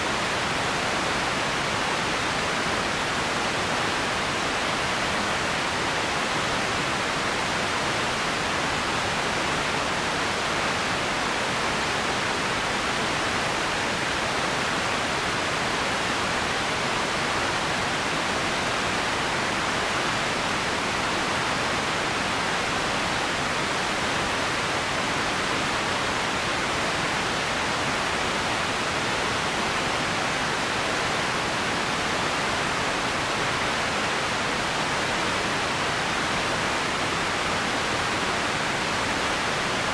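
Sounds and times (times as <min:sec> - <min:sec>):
steady ambience hiss: 0:00.0 - 0:39.9.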